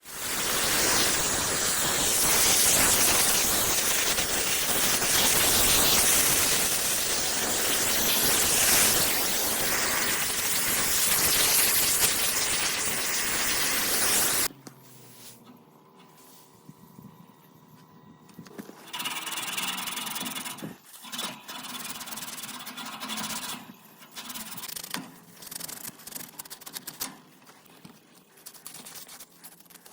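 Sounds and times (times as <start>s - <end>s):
gas hissing under pressure: 0.0s - 14.5s.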